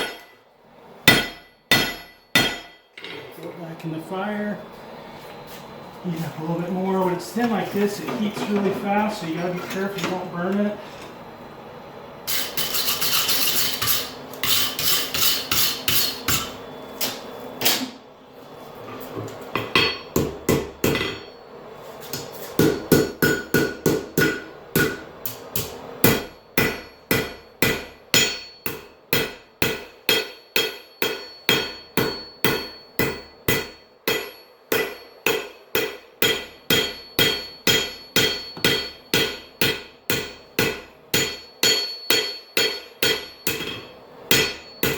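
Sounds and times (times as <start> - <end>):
hammer striking metal on anvil: 0.0 - 0.4, 1.0 - 3.2, 13.7 - 16.6, 19.6 - 21.4, 22.6 - 44.9.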